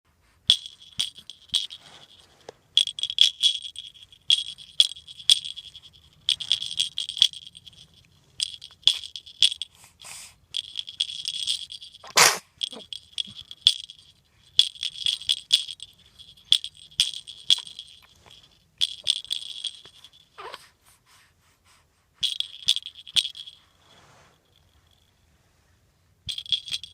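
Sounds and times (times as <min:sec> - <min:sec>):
bell toy jingling: 0:00.5 - 0:20.6, 0:22.2 - 0:23.8, 0:26.3 - 0:26.9
short sharp sound: 0:12.0 - 0:12.4.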